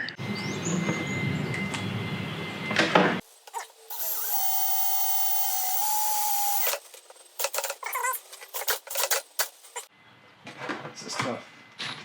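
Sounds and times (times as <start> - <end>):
power drill whining: 3.6 - 6.8.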